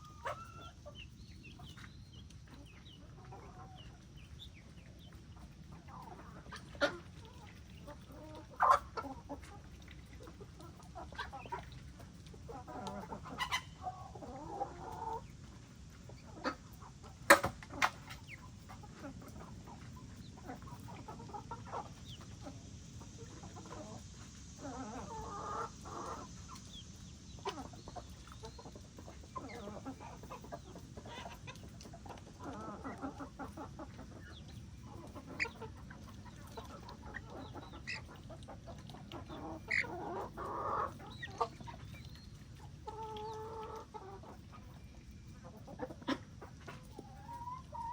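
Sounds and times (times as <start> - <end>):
chickens clucking: 0.0 - 47.9.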